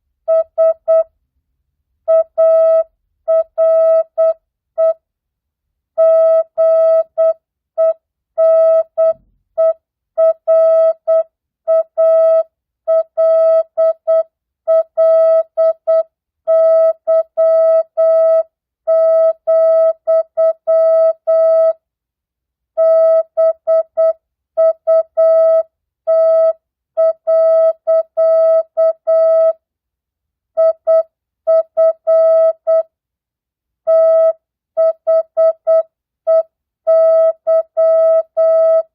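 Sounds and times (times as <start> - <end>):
morse code beeps: 33.9 - 38.8.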